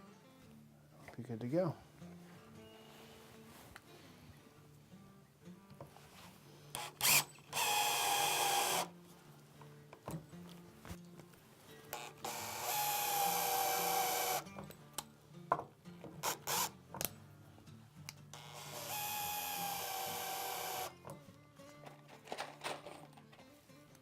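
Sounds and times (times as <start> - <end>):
power drill whining: 6.7 - 8.9, 12.0 - 14.4, 16.2 - 16.7, 18.4 - 21.0.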